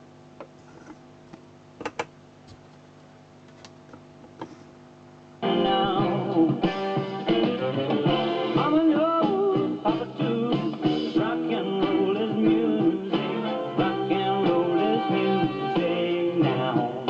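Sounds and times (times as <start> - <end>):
record player hum: 0.0 - 17.0
rock and roll song with guitar: 5.4 - 17.0.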